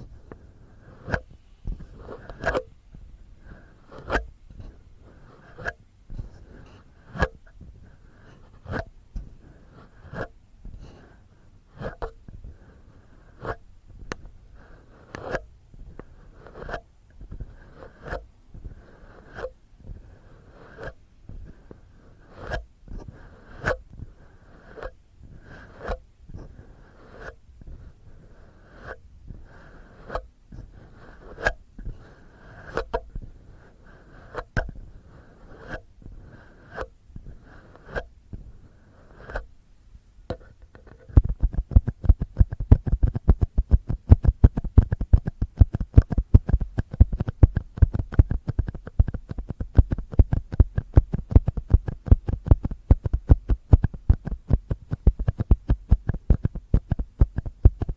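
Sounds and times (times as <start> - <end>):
fingernails scratching microphone: 0.9 - 2.7, 3.4 - 7.4, 14.7 - 19.6, 24.5 - 39.5, 40.3 - 57.9.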